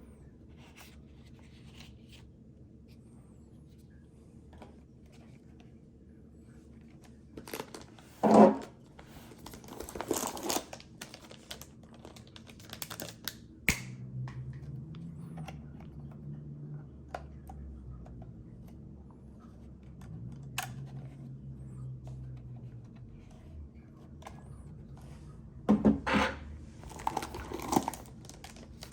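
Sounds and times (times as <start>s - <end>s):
low steady hum: 0.0s - 28.9s
packaging rustling and crinkling: 7.3s - 13.4s, 26.7s - 28.9s.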